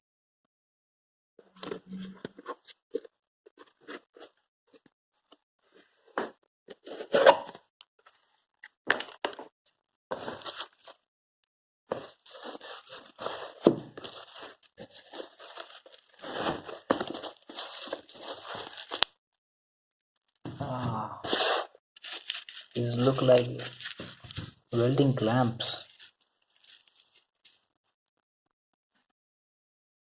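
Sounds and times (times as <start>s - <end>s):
packaging clicks and rustles: 11.9s - 19.2s, 22.0s - 25.0s, 25.7s - 27.8s
packaging tearing and crinkling: 12.0s - 19.2s, 21.3s - 24.7s, 25.8s - 27.7s.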